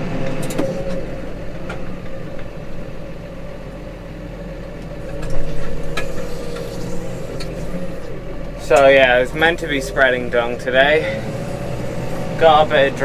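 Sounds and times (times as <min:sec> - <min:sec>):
tractor diesel engine running: 0:00.0 - 0:13.0.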